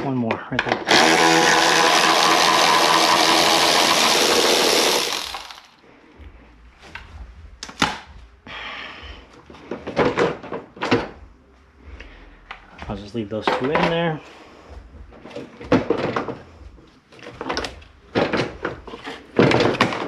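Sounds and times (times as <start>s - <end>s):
cordless power tool whining: 0.8s - 5.7s.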